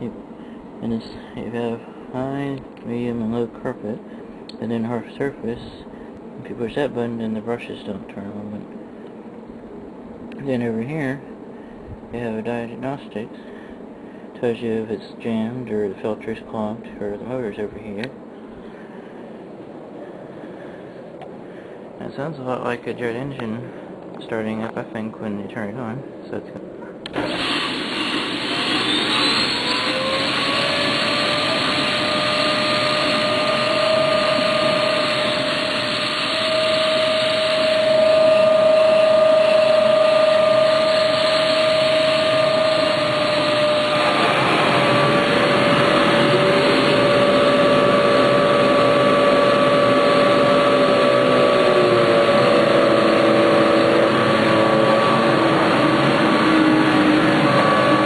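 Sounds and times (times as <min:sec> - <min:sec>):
shifting tones: 0:27.1 - 0:58.0
vacuum cleaner whining: 0:27.1 - 0:58.0
rushing airflow hiss: 0:27.2 - 0:58.0.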